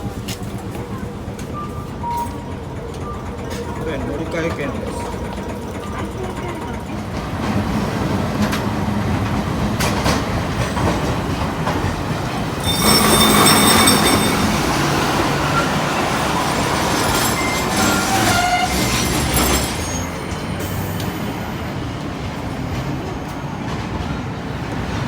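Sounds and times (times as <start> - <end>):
streetcar rumble and clatter: 0.0 - 25.0
high-pitched wheel screech: 12.6 - 21.2.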